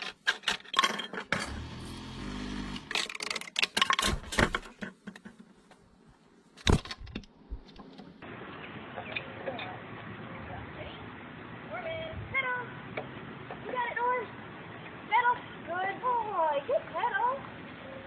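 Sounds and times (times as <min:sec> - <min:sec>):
metal bottle caps clinking: 0:00.0 - 0:01.6.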